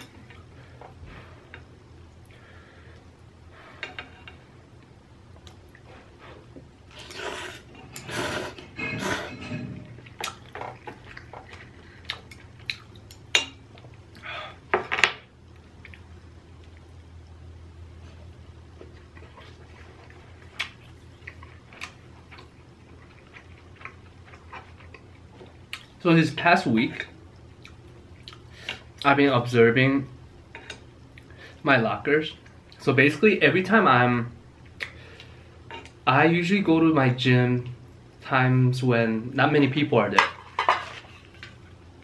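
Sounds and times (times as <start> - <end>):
low steady hum: 0.0 - 42.0
person chewing: 6.9 - 13.2, 18.8 - 26.0, 27.4 - 28.8.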